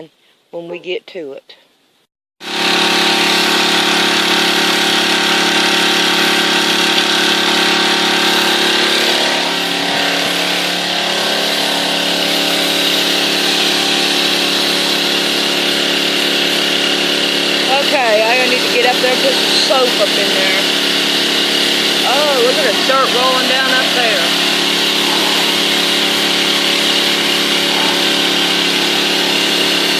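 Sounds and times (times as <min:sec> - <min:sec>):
pressure washer engine: 0:02.4 - 0:29.9
high-pitched water hiss: 0:22.0 - 0:29.9.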